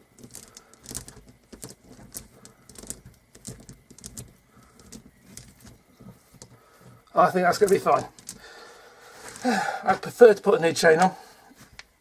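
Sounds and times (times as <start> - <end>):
roller chain links clicking: 0.0 - 8.6.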